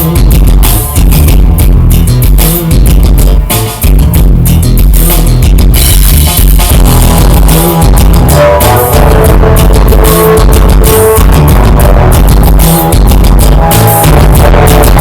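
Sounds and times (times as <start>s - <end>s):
loud music with heavy bass: 0.0s - 15.0s.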